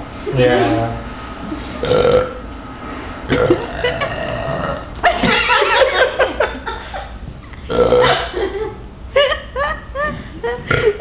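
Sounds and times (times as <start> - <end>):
loud deep belches: 1.8 - 2.4, 3.3 - 5.0, 7.7 - 8.4.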